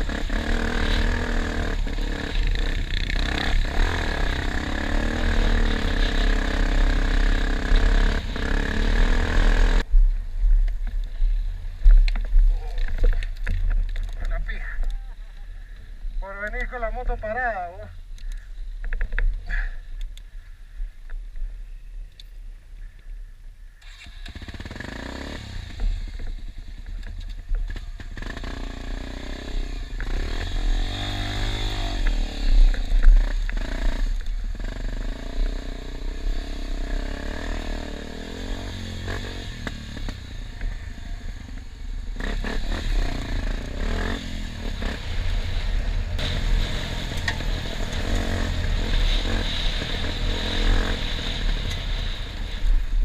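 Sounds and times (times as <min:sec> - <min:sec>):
motorcycle engine revving: 0:00.0 - 0:09.9, 0:23.8 - 0:53.0.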